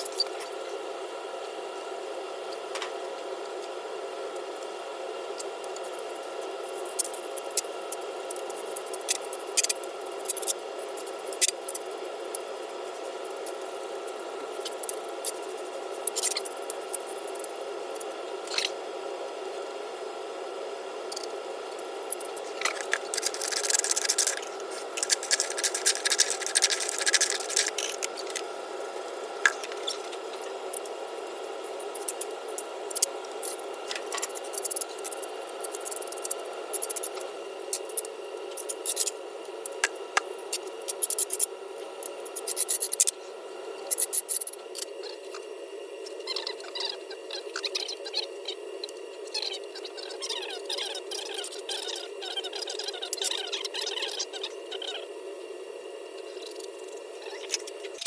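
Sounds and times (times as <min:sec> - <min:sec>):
steady mechanical hum: 0:00.0 - 0:58.0
trowel scraping concrete: 0:22.6 - 0:28.4.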